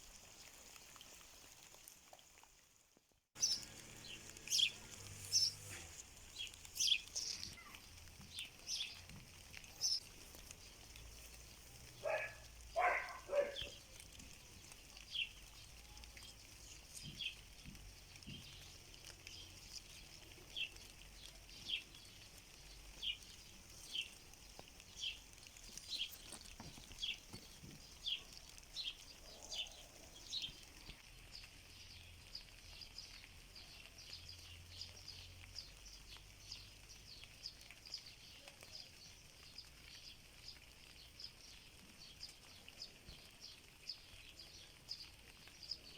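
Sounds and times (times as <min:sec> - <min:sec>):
rain hiss: 0:00.0 - 0:45.9
bird chirping: 0:03.4 - 0:30.8.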